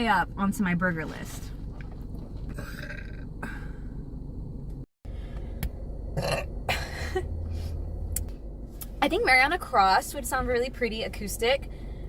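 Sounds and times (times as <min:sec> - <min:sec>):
woman burping: 0:02.5 - 0:03.6, 0:06.2 - 0:07.3.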